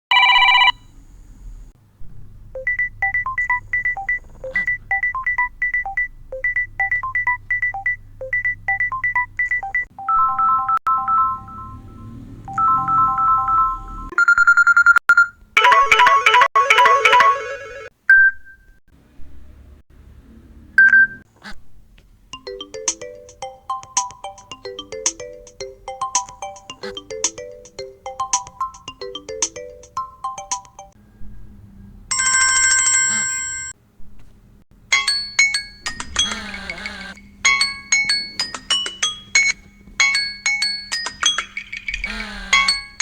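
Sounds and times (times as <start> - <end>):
electronic phone ringtones: 0.1 - 0.8, 2.6 - 18.3, 22.5 - 31.0.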